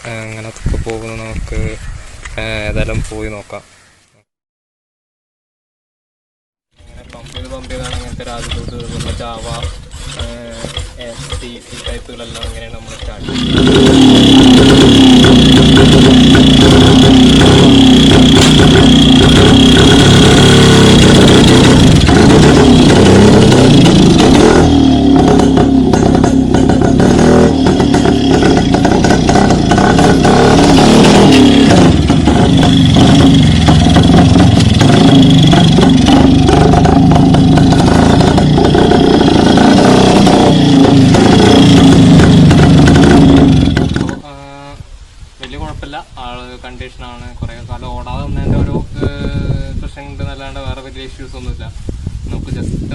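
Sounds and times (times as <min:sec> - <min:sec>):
motorcycle engine revving: 0:06.8 - 0:44.2.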